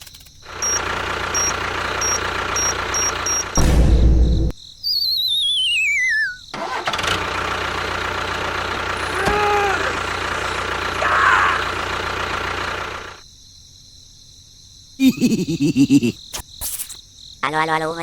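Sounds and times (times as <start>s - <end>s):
engine-like running sound: 0.2s - 3.8s, 6.6s - 13.2s
falling warbling whistle: 4.8s - 6.5s.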